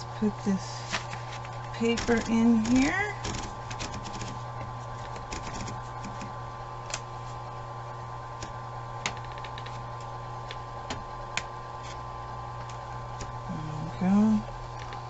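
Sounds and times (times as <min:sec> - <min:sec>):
paper feeding clicks and knocks: 0:00.9 - 0:06.3, 0:08.4 - 0:09.8
electric typewriter motor hum: 0:01.7 - 0:07.0.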